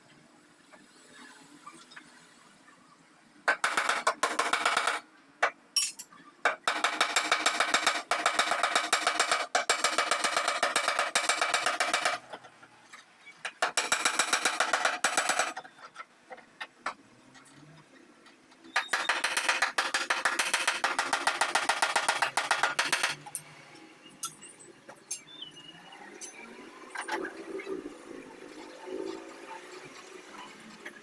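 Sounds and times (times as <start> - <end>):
hammer tapping sheet steel: 3.5 - 5.0, 5.8 - 12.2, 13.5 - 15.6, 18.8 - 23.4.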